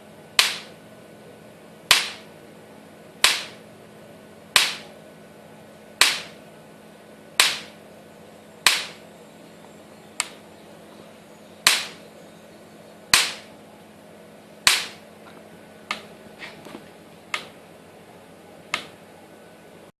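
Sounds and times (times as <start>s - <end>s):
faint steady hum: 0.0s - 20.0s
electric fence pulse cracks: 0.3s - 0.8s, 1.9s - 2.4s, 3.2s - 3.7s, 4.5s - 5.0s, 6.0s - 6.4s, 7.4s - 7.8s, 8.6s - 9.1s, 10.2s - 10.4s, 11.6s - 12.0s, 13.1s - 13.6s, 14.6s - 15.1s.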